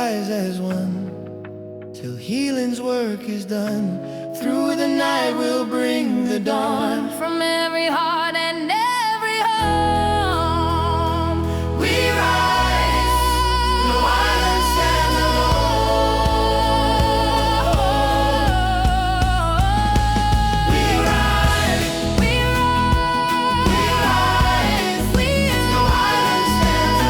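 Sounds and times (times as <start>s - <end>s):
sustained low chords: 9.8s - 27.0s.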